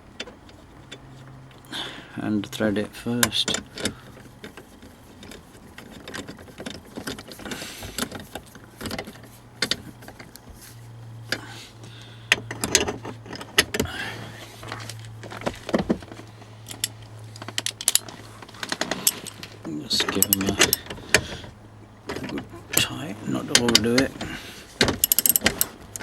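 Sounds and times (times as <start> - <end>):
steady low hum: 0.0 - 26.0
metal nuts clinking: 16.6 - 21.3, 22.1 - 26.0.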